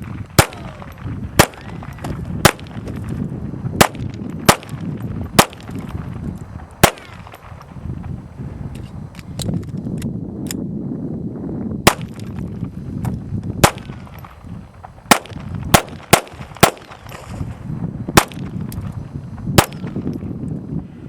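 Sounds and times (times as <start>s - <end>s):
pistol shots: 0.0s - 3.1s, 3.8s - 6.1s, 6.8s - 7.7s, 11.8s - 12.4s, 13.6s - 14.4s, 15.1s - 17.4s, 18.2s - 18.9s, 19.6s - 20.1s.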